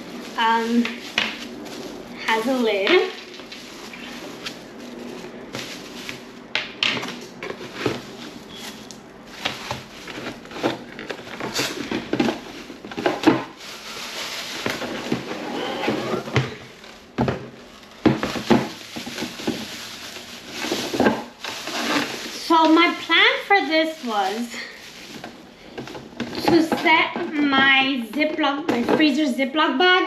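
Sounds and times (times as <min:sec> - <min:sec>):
rustling: 0:00.0 - 0:26.9
plastic bins knocking and clicking: 0:05.5 - 0:08.7, 0:09.3 - 0:13.8, 0:14.4 - 0:22.8, 0:25.0 - 0:29.3.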